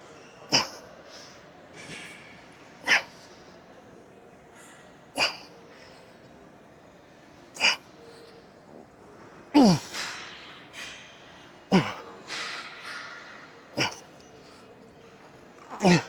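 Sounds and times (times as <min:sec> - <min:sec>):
person grunting and exhaling: 0:09.6 - 0:09.9, 0:11.7 - 0:12.0, 0:13.8 - 0:14.0, 0:15.7 - 0:16.0.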